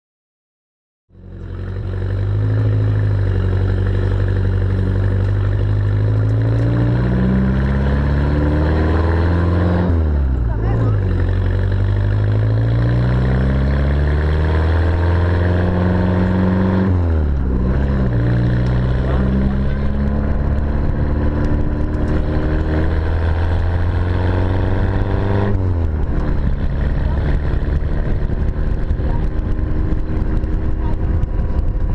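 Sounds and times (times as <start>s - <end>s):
car engine running: 1.1s - 31.9s.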